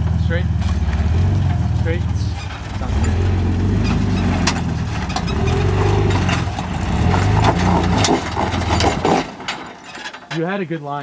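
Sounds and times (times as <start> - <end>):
engine revving under load: 0.0 - 9.8
tires knocking on rock: 0.0 - 10.2.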